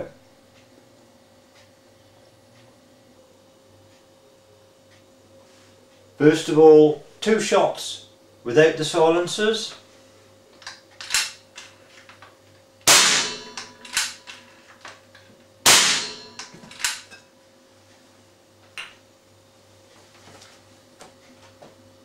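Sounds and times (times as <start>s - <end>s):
rifle handling clicks: 10.6s - 12.1s, 13.6s - 15.0s, 16.4s - 17.1s
air rifle shots: 12.9s - 14.2s, 15.7s - 16.4s.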